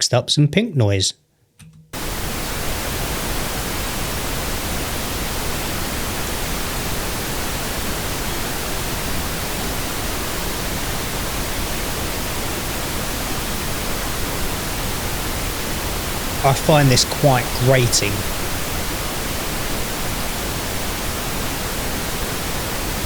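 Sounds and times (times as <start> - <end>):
pink noise hiss: 16.4 - 18.2.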